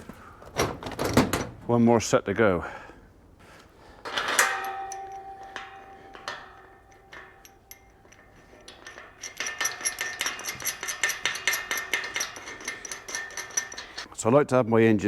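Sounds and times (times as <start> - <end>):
ringing metal clank: 4.1 - 14.1
small metallic ticks and clinks: 4.1 - 14.1.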